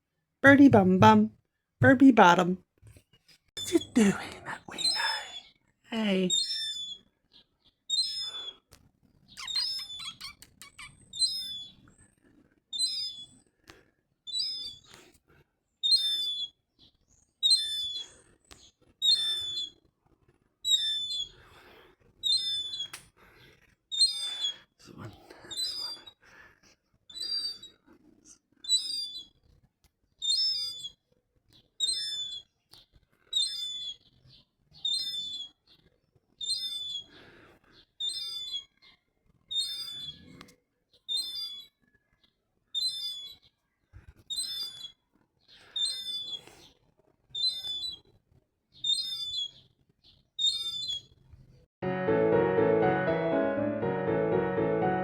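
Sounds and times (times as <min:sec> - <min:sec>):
piano music: 0:51.8 - 0:55.0.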